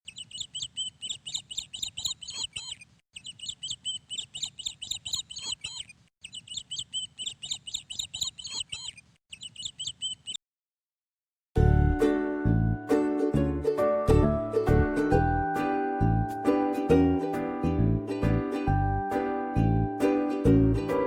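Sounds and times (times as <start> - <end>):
bird chirping: 0.0 - 10.4.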